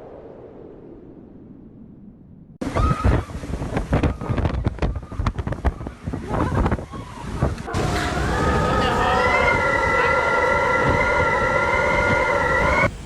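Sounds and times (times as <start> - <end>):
wind buffeting microphone: 2.6 - 13.0.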